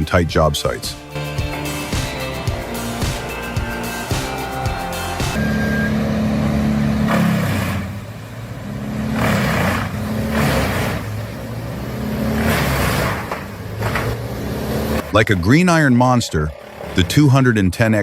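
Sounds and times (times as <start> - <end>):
heavy machine engine running: 4.8 - 17.8.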